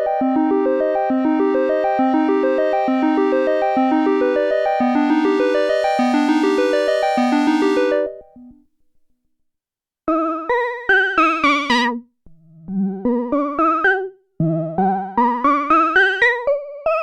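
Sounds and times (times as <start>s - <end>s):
fast synthesizer note sequence: 0.0s - 8.3s
synthesizer lead melody with vibrato: 0.0s - 8.5s.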